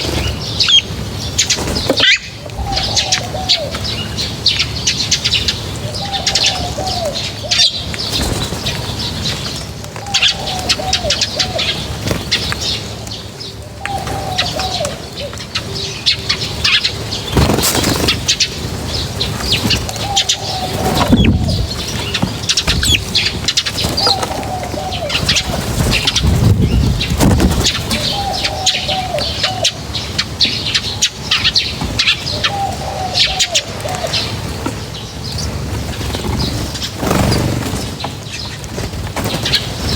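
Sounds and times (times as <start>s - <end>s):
small birds chirping: 0.0s - 39.9s
wings flapping: 7.5s - 13.1s, 13.8s - 29.5s, 33.4s - 39.9s.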